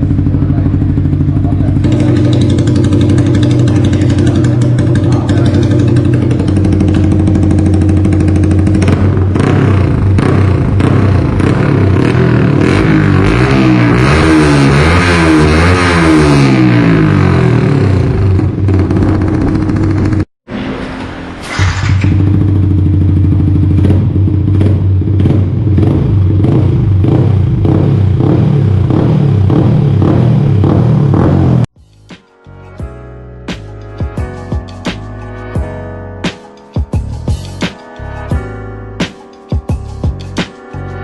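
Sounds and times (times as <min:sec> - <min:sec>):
motorcycle engine idling and revving: 0:00.0 - 0:31.8.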